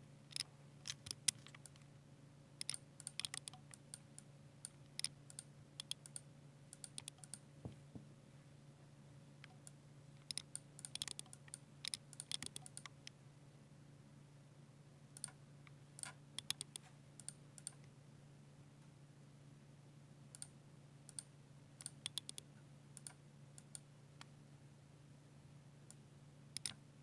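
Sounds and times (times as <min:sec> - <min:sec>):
mechanical keyboard typing: 0:02.6 - 0:03.6, 0:06.8 - 0:07.4, 0:10.3 - 0:12.9, 0:16.0 - 0:17.8, 0:21.8 - 0:22.4.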